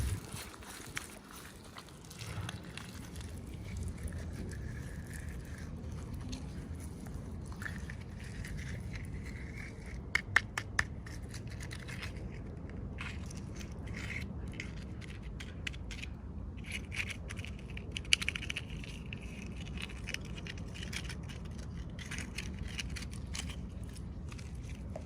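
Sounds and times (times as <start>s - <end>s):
packaging handled and scraped: 0.0s - 16.0s.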